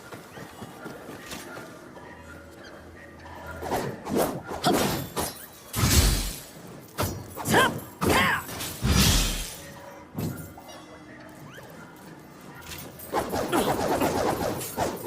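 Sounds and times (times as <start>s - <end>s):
weapon swishes: 12.7s - 15.0s.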